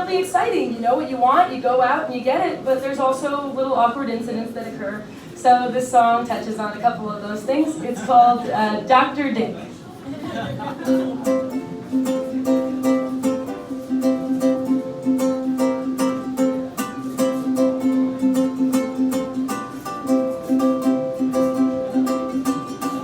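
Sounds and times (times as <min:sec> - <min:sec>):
ukulele strumming: 0:10.5 - 0:23.0.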